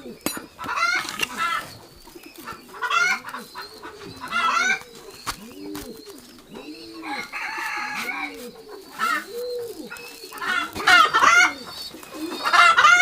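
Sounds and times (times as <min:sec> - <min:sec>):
hen calls: 0:00.0 - 0:13.0
pigeons cooing: 0:00.0 - 0:13.0.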